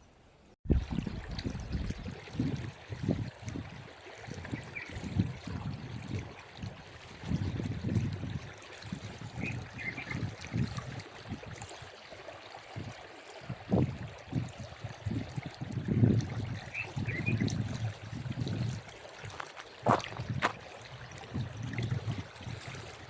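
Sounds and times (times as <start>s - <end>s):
water running and trickling: 0.7s - 23.0s.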